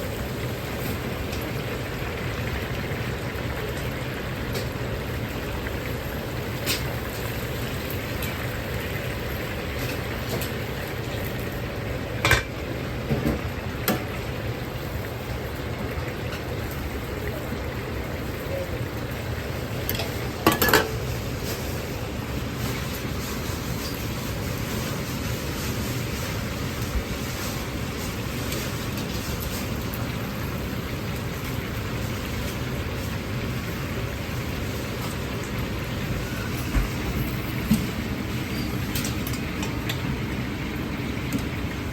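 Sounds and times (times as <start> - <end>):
oil sizzling from deep-frying: 0.0 - 41.9
metal utensils clinking on pans: 19.8 - 21.1.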